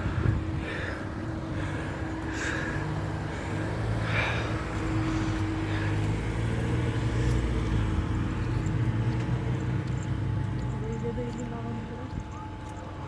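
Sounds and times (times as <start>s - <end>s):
vehicle engine humming: 0.0s - 13.0s.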